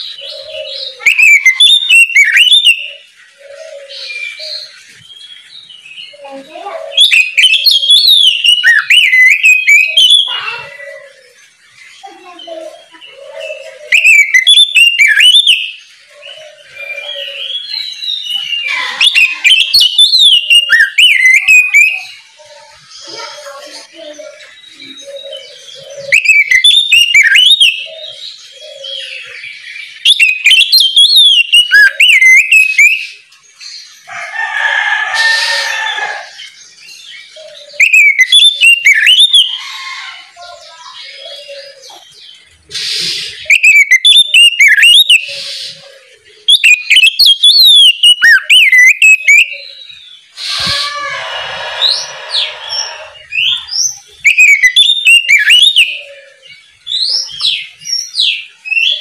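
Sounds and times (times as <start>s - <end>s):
bird singing whistled phrases: 0.0s - 3.1s, 6.9s - 11.2s, 12.8s - 15.8s, 16.6s - 22.4s, 24.3s - 28.1s, 30.0s - 33.2s, 37.5s - 39.6s, 42.8s - 45.9s, 46.5s - 56.2s
bird harsh rasping call: 34.0s - 36.5s, 42.7s - 56.4s.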